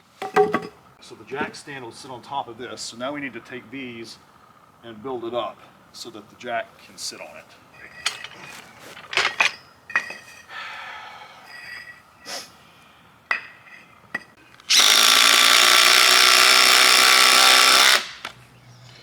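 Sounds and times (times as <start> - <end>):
knocks and clanks: 0.2 - 0.8, 7.8 - 10.4
power tool motor running: 14.6 - 18.4.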